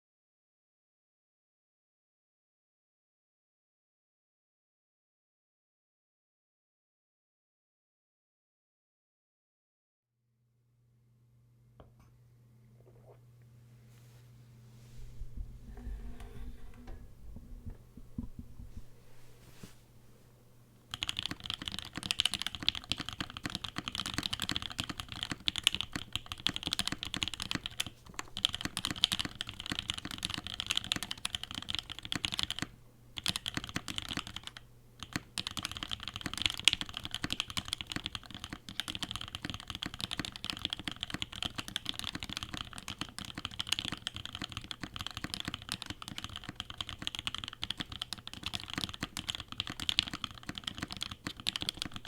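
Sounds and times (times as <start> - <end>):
fast mechanical keyboard typing: 20.9 - 52.0.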